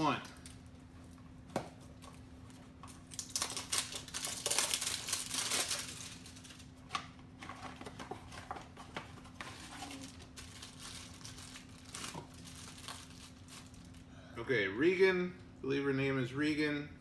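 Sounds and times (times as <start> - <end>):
packaging crinkling and tearing: 2.0 - 14.0.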